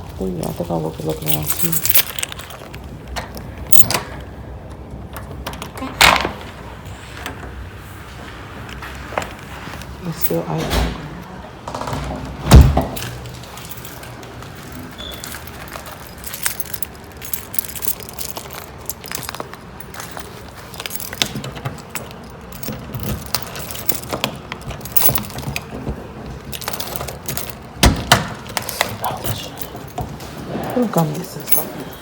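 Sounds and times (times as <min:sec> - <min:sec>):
keys jangling: 0:00.4 - 0:04.2, 0:12.5 - 0:32.0.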